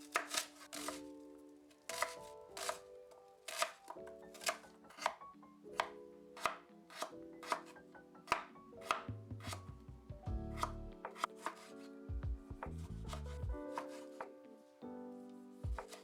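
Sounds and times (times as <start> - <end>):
knife chopping vegetables: 0.0 - 1.1, 1.9 - 2.8, 3.5 - 5.2, 5.8 - 7.7, 8.3 - 9.7, 10.5 - 11.8, 12.6 - 14.3, 15.7 - 16.0
soft background music: 0.0 - 16.0.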